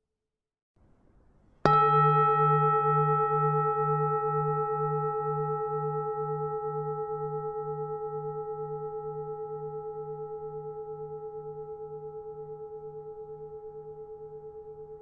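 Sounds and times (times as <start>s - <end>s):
temple bell ringing: 1.7s - 9.8s.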